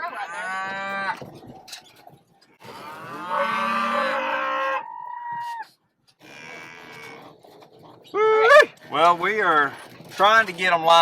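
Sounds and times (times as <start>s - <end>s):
cattle mooing: 0.0s - 1.2s, 2.6s - 5.5s, 6.2s - 7.3s.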